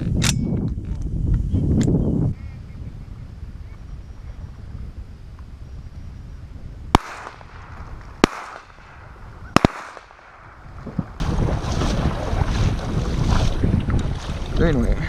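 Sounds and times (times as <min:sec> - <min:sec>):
wind rumble on microphone: 0:00.0 - 0:15.0
shotgun shots with echo: 0:06.9 - 0:10.6.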